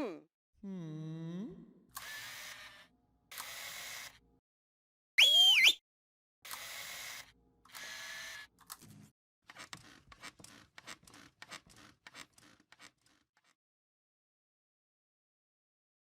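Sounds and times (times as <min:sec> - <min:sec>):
quick scratching clicks: 0:09.5 - 0:13.6.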